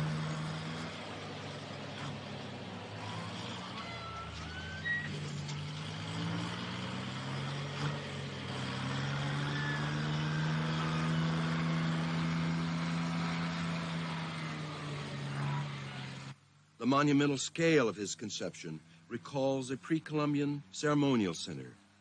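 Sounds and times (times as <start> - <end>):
diesel engine under load: 0.0 - 16.8.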